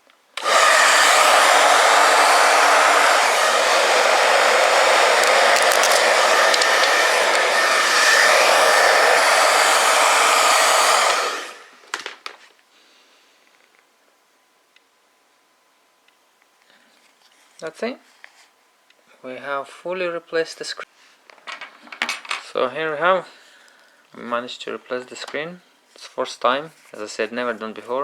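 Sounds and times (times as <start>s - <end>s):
hot-air blower running: 0.4s - 11.9s.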